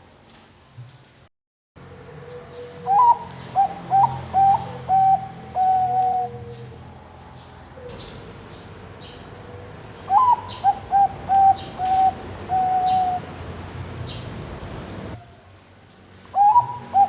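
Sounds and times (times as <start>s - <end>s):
dove cooing: 1.8s - 15.4s, 16.4s - 17.0s
small birds chirping: 2.2s - 15.2s.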